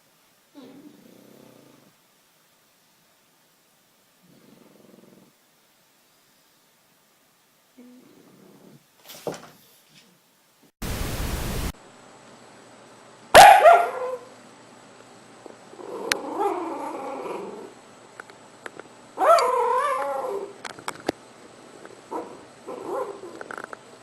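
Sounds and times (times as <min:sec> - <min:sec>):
dog yelping: 0:13.4 - 0:14.3, 0:19.2 - 0:20.6, 0:22.1 - 0:23.4
dog whining and whimpering: 0:19.2 - 0:20.6.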